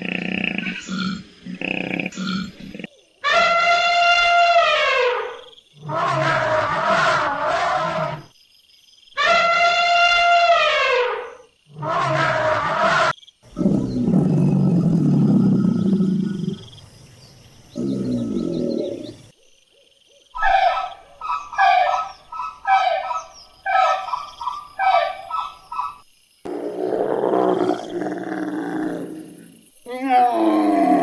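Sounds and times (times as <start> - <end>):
animal deep roar: 11.7 - 16.9, 17.7 - 19.3, 26.5 - 31.0
animal long falling call: 29.9 - 31.0.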